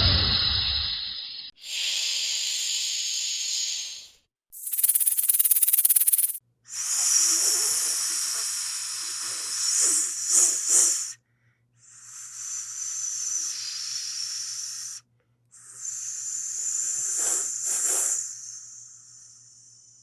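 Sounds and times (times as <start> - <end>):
snake hissing: 1.6 - 6.4.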